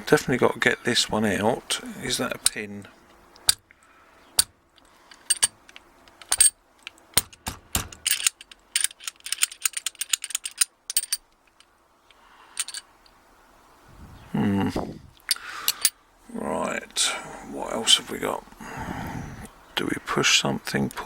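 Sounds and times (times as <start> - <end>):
padlock metallic clicks and rattles: 3.4 - 3.8, 4.4 - 11.8, 12.6 - 12.9, 15.2 - 16.0.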